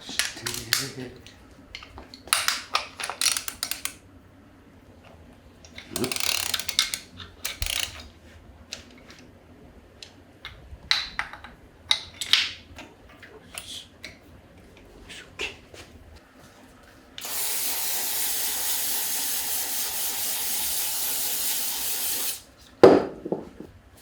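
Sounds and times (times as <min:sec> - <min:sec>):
hand tools clicking and clattering: 0:00.0 - 0:01.0.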